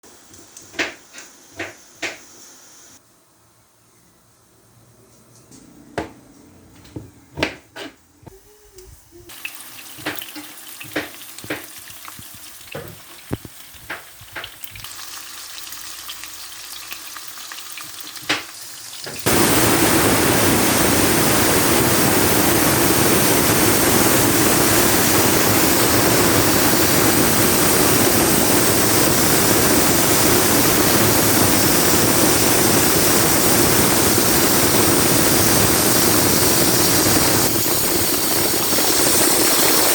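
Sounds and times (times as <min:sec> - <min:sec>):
steam hissing: 0:18.2 - 0:39.9
pressure cooker whistle: 0:19.3 - 0:39.9.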